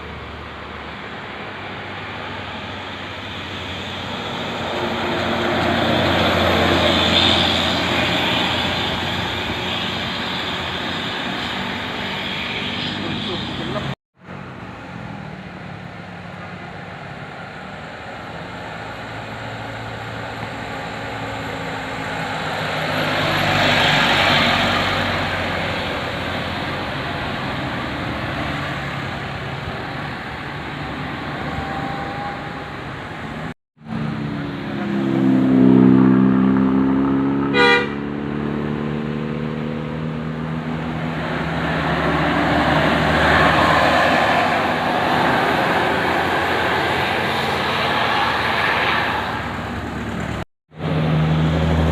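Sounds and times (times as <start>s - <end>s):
bus and traffic engines: 0.0s - 51.9s
horn with steady tones: 37.5s - 38.0s
short sharp horn blast: 37.5s - 38.1s.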